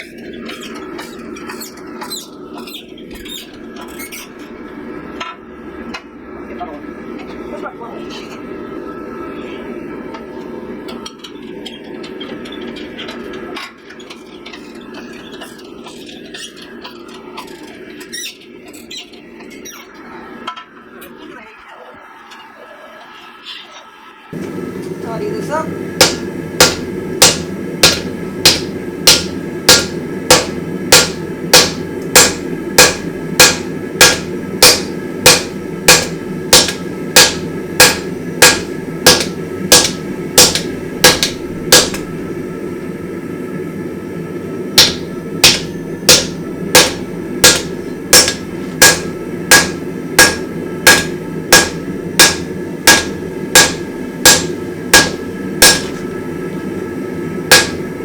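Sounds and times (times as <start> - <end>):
hammer ringing on anvil: 26.0 - 42.0, 44.8 - 56.0, 57.5 - 57.9.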